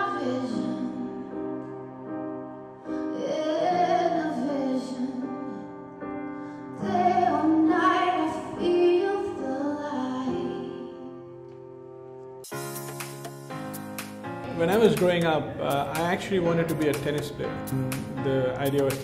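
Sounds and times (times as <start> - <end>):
sustained instrumental chords: 12.4 - 19.0.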